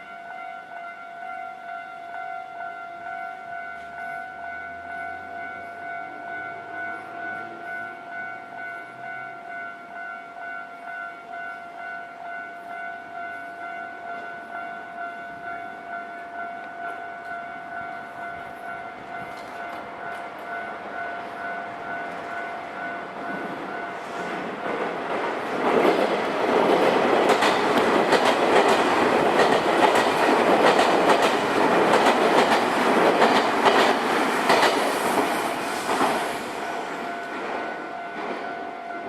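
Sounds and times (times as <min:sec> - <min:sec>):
level crossing warning bell ringing: 0:00.0 - 0:24.8, 0:36.6 - 0:39.0
train rumbling: 0:13.6 - 0:39.0.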